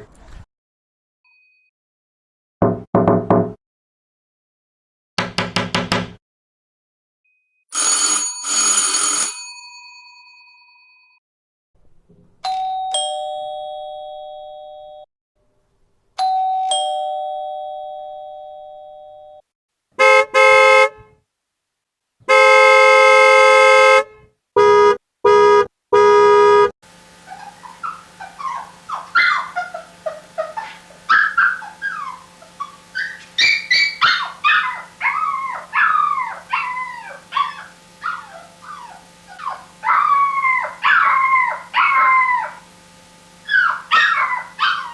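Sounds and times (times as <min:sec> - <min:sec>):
buzzer doorbell: 0:07.7 - 0:09.8, 0:22.3 - 0:24.0
ding-dong doorbell chimes: 0:07.7 - 0:11.2, 0:12.4 - 0:15.1, 0:16.2 - 0:19.4
dog whining and yipping: 0:27.3 - 0:42.6, 0:43.4 - 0:44.9.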